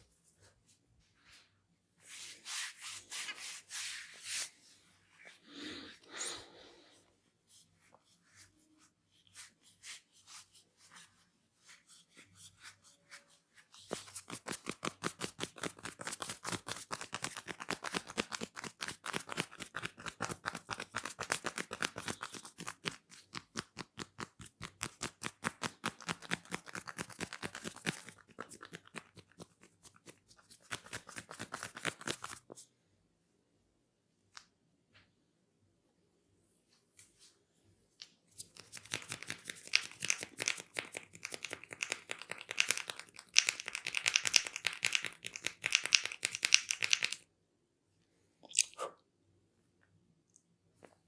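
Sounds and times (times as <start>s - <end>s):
head massage hand clicks: 38.8s - 47.2s.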